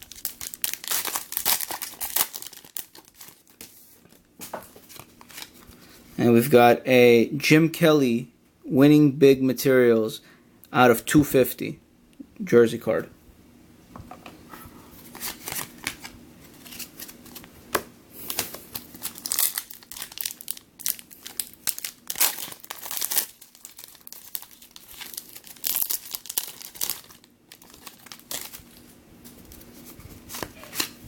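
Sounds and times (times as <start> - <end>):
card pack wrapper crinkling and tearing: 0.0 - 3.7, 15.1 - 17.5, 18.2 - 28.9.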